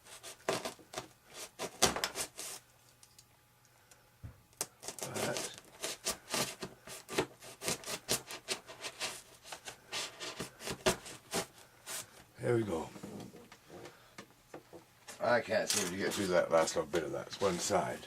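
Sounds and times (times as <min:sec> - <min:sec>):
hobby knife scraping and sawing: 0:00.0 - 0:02.6, 0:04.8 - 0:12.0.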